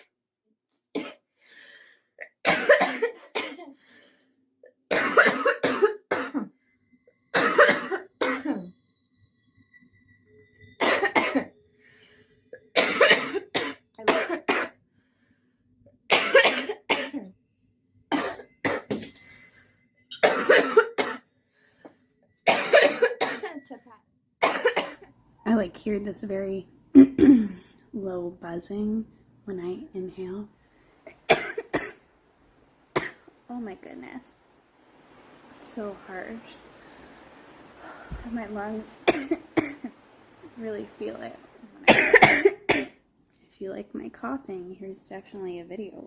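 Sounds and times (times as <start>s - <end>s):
woman coughing harshly: 2.2s - 3.8s, 4.9s - 6.5s, 7.4s - 8.7s, 10.8s - 11.5s, 12.7s - 14.8s, 16.1s - 17.3s, 18.1s - 19.2s, 20.1s - 21.2s, 22.5s - 23.6s, 24.4s - 25.0s, 27.0s - 27.6s, 31.2s - 32.0s, 39.0s - 39.9s, 41.9s - 43.0s.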